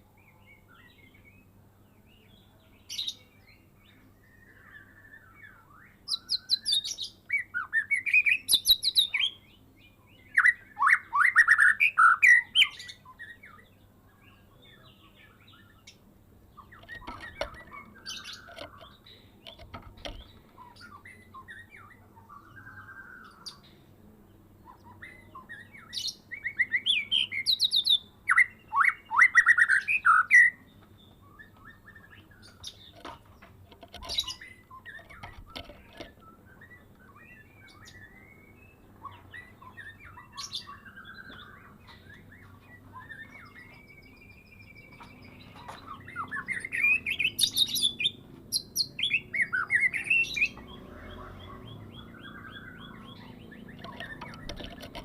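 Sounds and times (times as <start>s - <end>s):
soft bird twittering: 0.1s - 55.0s
bird singing whistled phrases: 10.4s - 13.6s, 25.1s - 30.6s.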